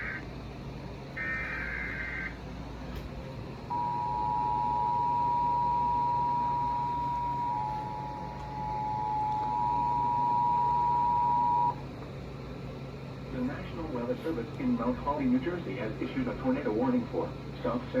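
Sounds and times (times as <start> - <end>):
two-tone attention signal: 3.7 - 11.8.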